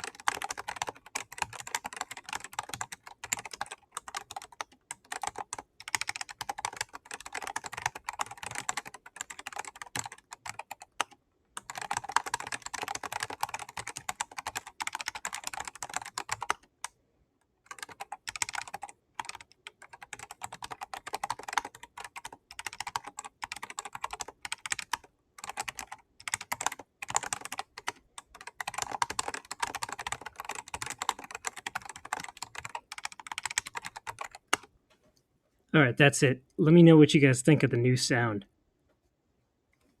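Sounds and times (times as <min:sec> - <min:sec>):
mechanical keyboard typing: 0:00.0 - 0:16.7, 0:17.7 - 0:34.7.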